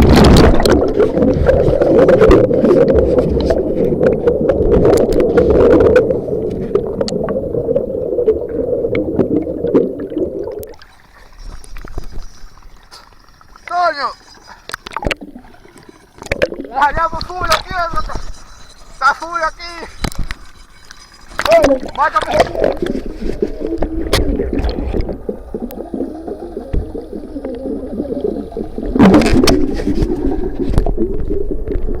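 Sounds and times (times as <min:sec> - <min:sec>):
wind noise: 0:00.0 - 0:09.7, 0:28.5 - 0:32.0
water sloshing and gurgling: 0:00.0 - 0:32.0.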